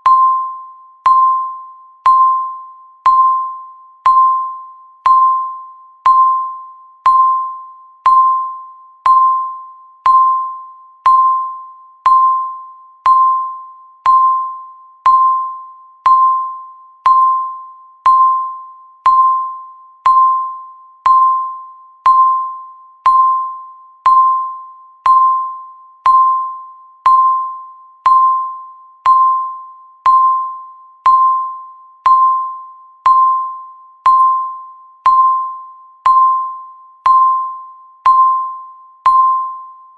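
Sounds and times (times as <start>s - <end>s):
timer ticking ping: 0.0s - 39.8s.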